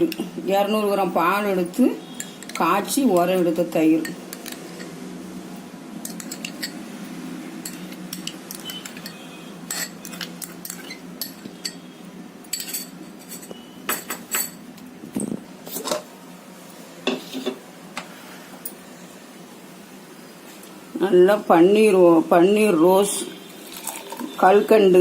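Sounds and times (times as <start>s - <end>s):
spoon clinking against dishes: 2.1s - 3.3s, 6.0s - 6.8s, 7.6s - 11.9s, 12.5s - 14.6s.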